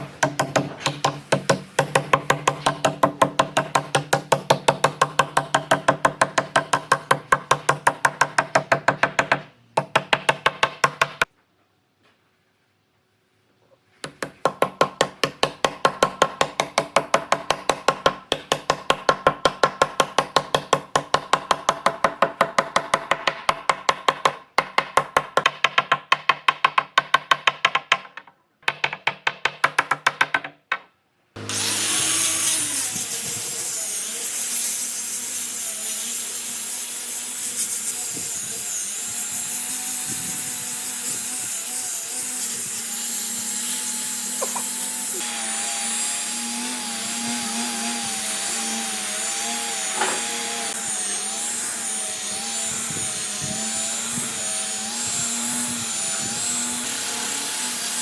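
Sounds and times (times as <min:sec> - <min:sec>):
power tool running: 0:31.4 - 0:58.0.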